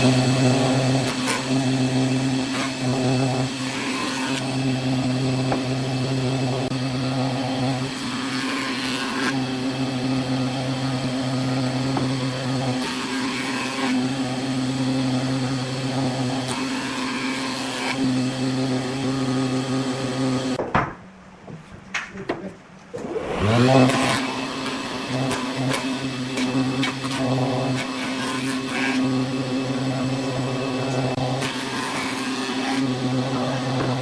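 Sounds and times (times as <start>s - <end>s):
wood lathe motor hum: 0.0s - 20.6s, 23.0s - 34.0s
cutting tool scraping wood: 23.4s - 29.2s.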